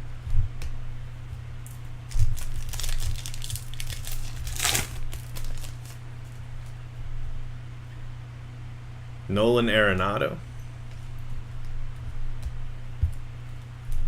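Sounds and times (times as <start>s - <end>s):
steady low hum: 0.0s - 14.0s
foil wrappers crinkling and tearing: 2.1s - 6.8s.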